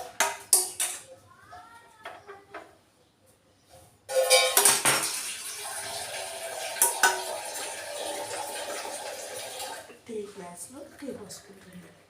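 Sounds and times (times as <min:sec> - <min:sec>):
pan clattering: 0:04.1 - 0:05.2
tea pouring into a glass: 0:05.0 - 0:09.9.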